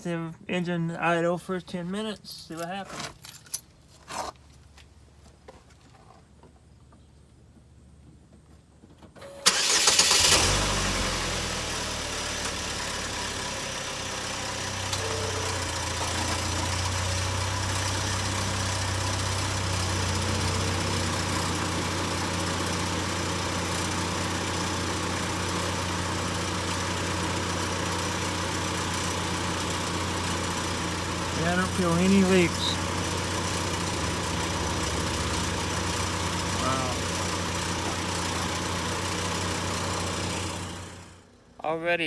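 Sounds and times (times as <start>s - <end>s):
car engine starting and idling: 8.8s - 41.6s.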